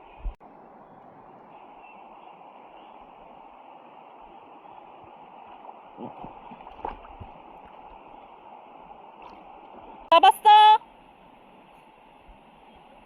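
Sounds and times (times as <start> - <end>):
stream water running over rocks: 0.4 - 10.1
faint splashes in water: 1.5 - 10.1.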